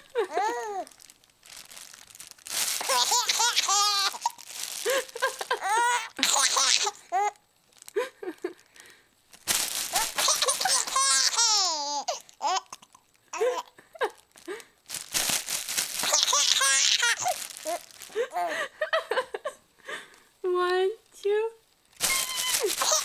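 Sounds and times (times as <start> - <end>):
baby laughing: 0.0 - 0.9, 2.8 - 7.4, 9.9 - 13.8, 16.0 - 18.6, 22.0 - 23.0
plastic crinkling: 0.0 - 18.7, 21.7 - 23.0.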